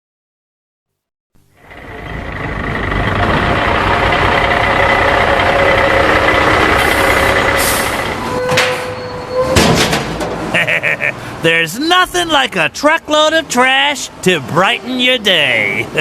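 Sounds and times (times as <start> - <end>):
garbage truck engine running: 1.4 - 10.6.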